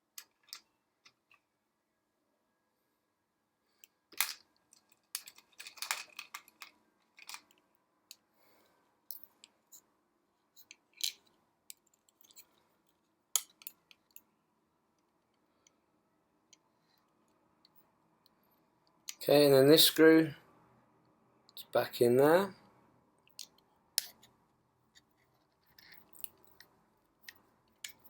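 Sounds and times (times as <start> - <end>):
small clicks taps and scrapes: 0.1 - 1.5, 3.8 - 8.3, 10.5 - 14.3, 23.2 - 28.0.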